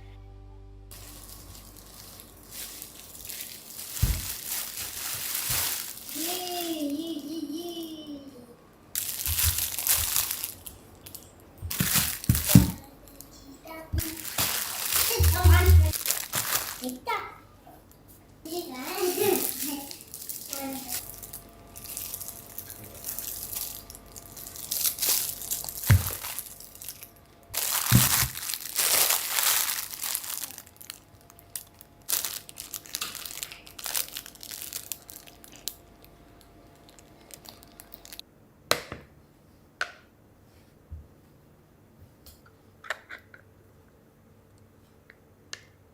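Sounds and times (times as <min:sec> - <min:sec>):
plastic bags crinkling: 0:00.9 - 0:07.1, 0:09.0 - 0:13.2, 0:14.0 - 0:17.2, 0:18.7 - 0:38.2.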